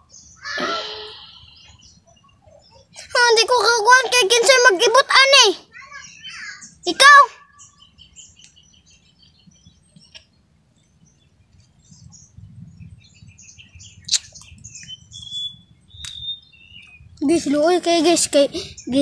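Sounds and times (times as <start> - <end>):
birds chirping: 0.0 - 19.0
sharp clicks: 14.1 - 15.0, 16.0 - 16.3.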